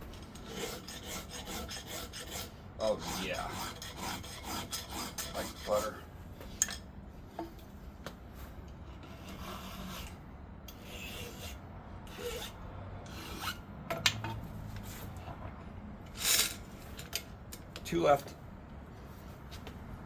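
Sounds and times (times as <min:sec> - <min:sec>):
file rasping on chain: 0:00.2 - 0:06.0, 0:09.0 - 0:13.6.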